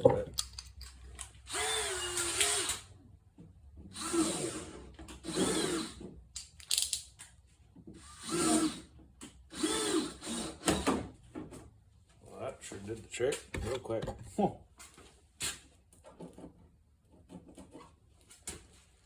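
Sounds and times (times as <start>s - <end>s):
power drill drilling: 1.5s - 2.9s, 3.9s - 6.1s, 8.0s - 8.9s, 9.5s - 11.0s.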